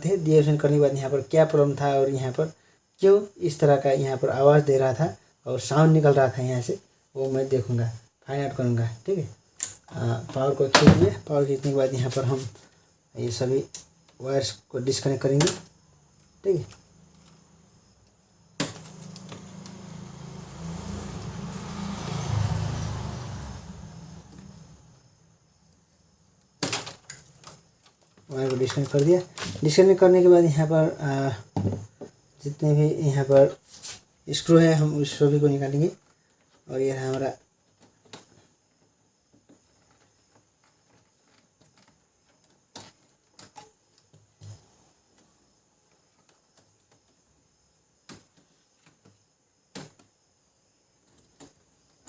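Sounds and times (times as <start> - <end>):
motor vehicle passing: 19.0 - 25.2.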